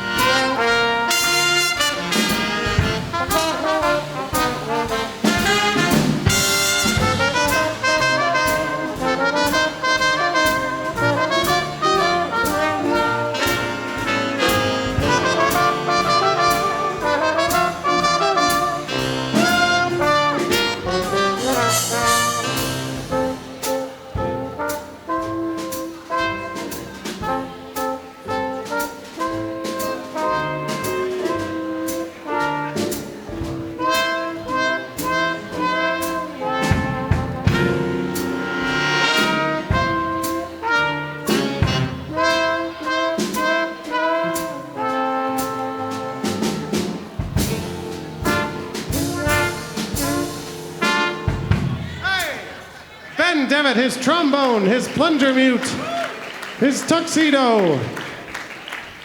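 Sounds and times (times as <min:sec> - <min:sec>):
big band swing jazz: 0:00.0 - 0:59.0
sharp drum hits: 0:00.2 - 0:09.7.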